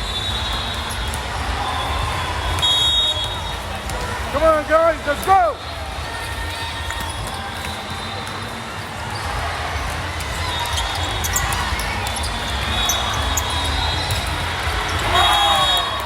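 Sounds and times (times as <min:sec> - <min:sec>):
shoe squeaks: 0:00.0 - 0:01.3, 0:10.2 - 0:16.0.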